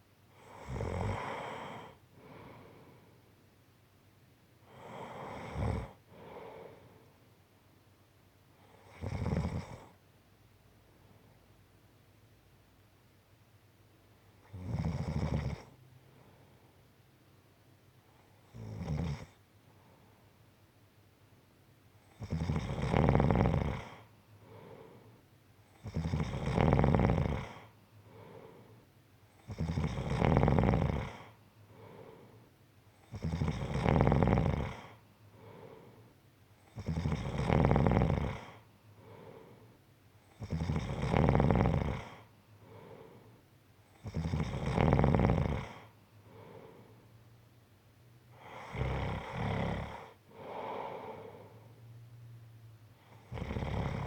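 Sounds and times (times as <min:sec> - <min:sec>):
soft breath: 0:00.3 - 0:03.4, 0:04.6 - 0:07.3, 0:16.0 - 0:16.8, 0:23.9 - 0:25.3, 0:27.6 - 0:28.9, 0:31.0 - 0:32.6, 0:34.7 - 0:36.2, 0:38.3 - 0:39.9, 0:42.0 - 0:44.0, 0:45.7 - 0:47.2, 0:48.3 - 0:52.3
person snoring: 0:00.4 - 0:02.4, 0:04.7 - 0:06.4, 0:22.2 - 0:24.0, 0:25.8 - 0:28.5, 0:29.5 - 0:32.2, 0:33.1 - 0:35.8, 0:36.8 - 0:39.6, 0:40.4 - 0:43.3, 0:44.0 - 0:46.9, 0:48.4 - 0:51.6, 0:53.1 - 0:54.0.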